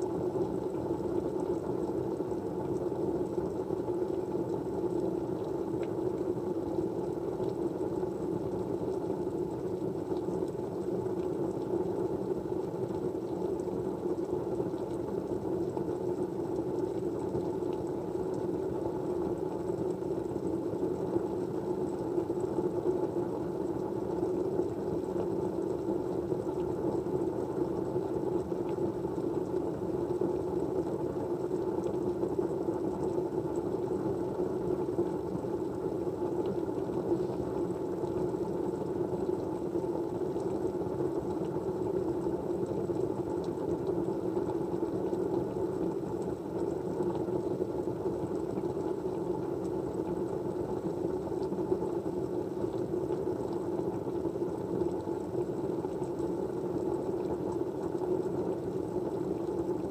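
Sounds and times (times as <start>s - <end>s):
faint ticks: 2.7s - 7.6s.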